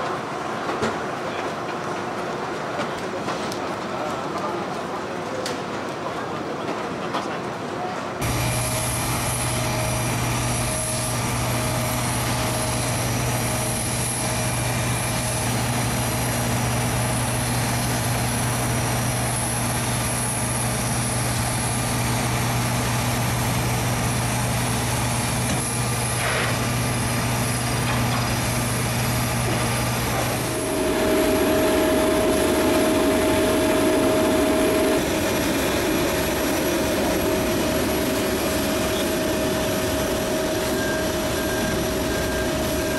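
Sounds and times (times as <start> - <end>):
airliner hum and rush: 8.2 - 42.9
jet engine whine: 8.2 - 42.9.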